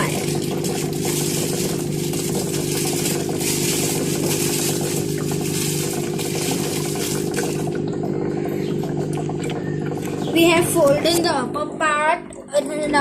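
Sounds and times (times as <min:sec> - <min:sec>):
aquarium filter hum: 0:00.0 - 0:13.0.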